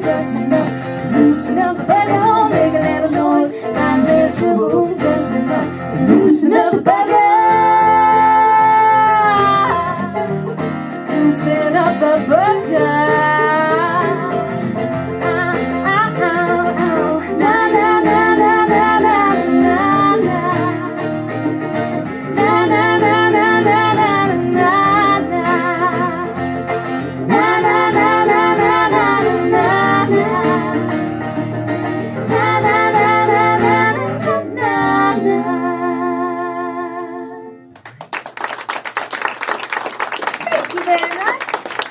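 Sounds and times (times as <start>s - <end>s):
people singing: 0.0s - 10.5s, 11.1s - 37.7s
plucked guitars: 0.0s - 38.1s
acoustic country band playing: 0.0s - 41.9s
audience clapping: 37.7s - 41.9s.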